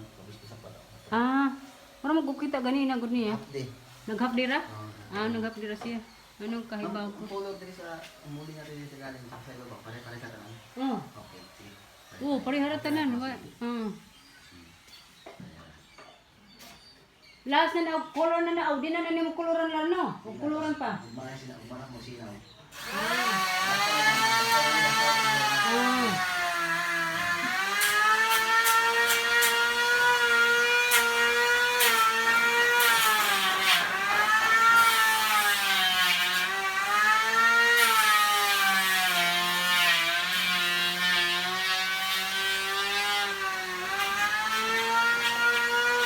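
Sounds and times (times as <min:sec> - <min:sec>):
power tool motor whining: 0:22.7 - 0:46.0.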